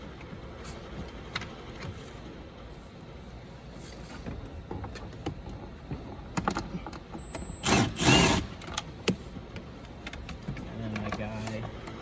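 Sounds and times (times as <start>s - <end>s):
power driver running: 7.6s - 8.5s.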